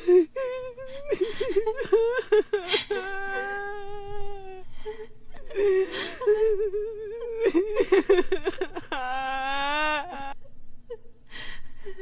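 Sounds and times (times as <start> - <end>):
person keening: 0.0 - 12.0.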